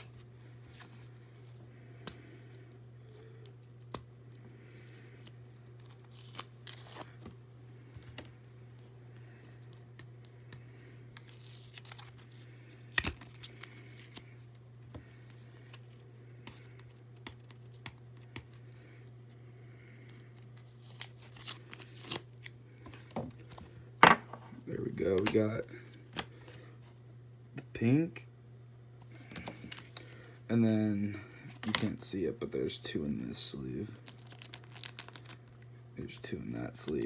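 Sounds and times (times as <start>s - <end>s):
packaging tearing and crinkling: 5.8s - 7.1s, 11.2s - 12.3s, 20.6s - 23.0s, 31.5s - 32.0s, 34.0s - 35.6s.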